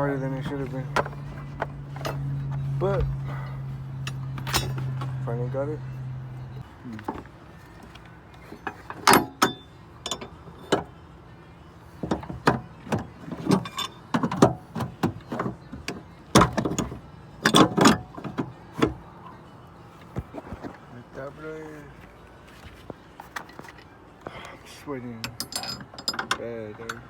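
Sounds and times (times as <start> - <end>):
tools clanking and knocking: 0.3 - 5.3, 7.0 - 10.9, 12.0 - 19.0, 25.2 - 27.0.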